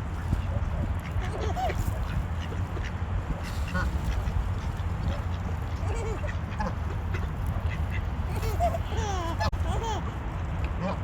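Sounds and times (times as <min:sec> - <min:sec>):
ducks quacking: 0:01.0 - 0:08.6.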